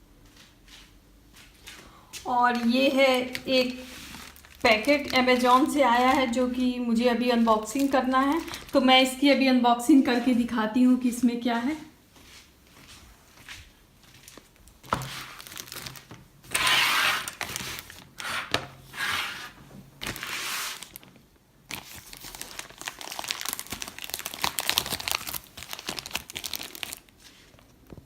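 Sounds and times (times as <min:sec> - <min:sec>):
packaging crinkling: 0:02.5 - 0:09.2, 0:14.3 - 0:18.5, 0:20.0 - 0:28.0.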